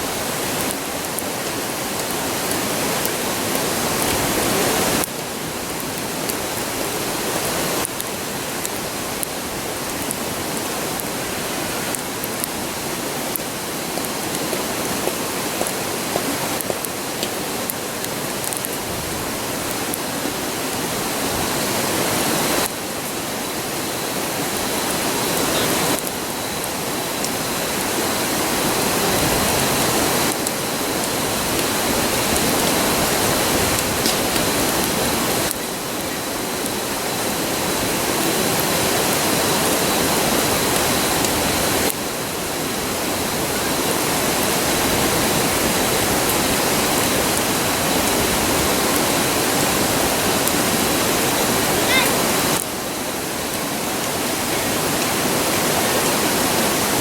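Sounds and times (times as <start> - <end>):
campfire crackling: 0.0 - 57.0
river rushing: 0.0 - 57.0.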